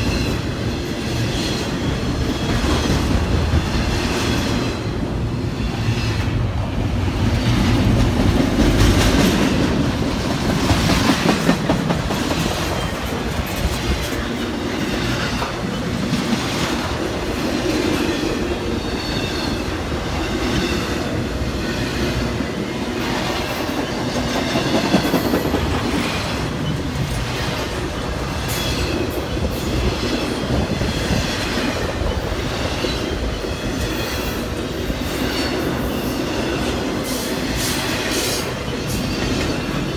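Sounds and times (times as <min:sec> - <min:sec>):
train wheels clicking over rail joints: 0:00.0 - 0:39.9.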